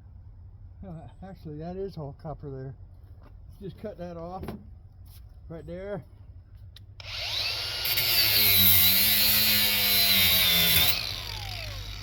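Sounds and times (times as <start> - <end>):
angle grinder cutting copper tubing: 7.0 - 12.0.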